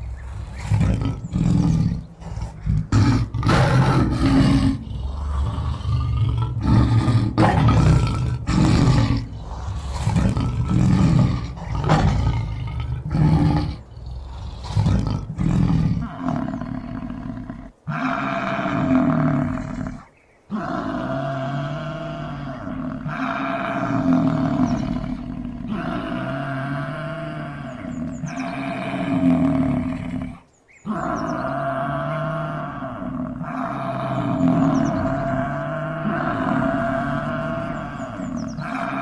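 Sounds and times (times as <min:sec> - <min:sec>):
bison bellowing: 0:00.0 - 0:20.0, 0:30.9 - 0:39.0
lion roaring: 0:00.0 - 0:39.0.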